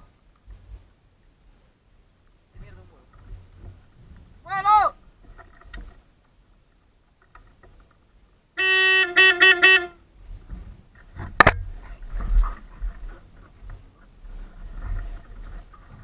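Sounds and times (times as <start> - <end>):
vehicle horn honking: 8.6 - 10.0
low rumbling noise: 9.8 - 16.0.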